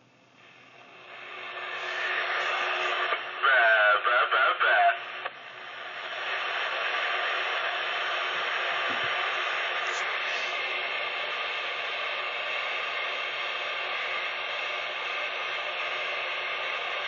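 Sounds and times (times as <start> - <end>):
radio static hiss: 0.4 - 17.0
garbled warbling radio voice: 3.0 - 5.0.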